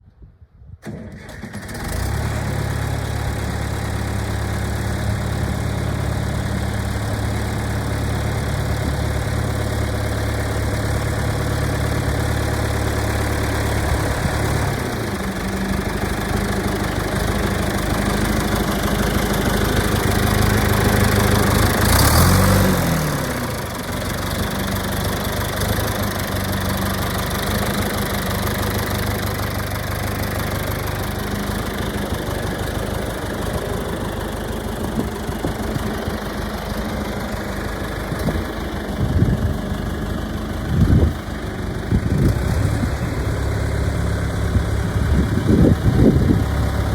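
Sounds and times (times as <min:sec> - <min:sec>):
backhoe engine idling: 0:01.6 - 0:46.9.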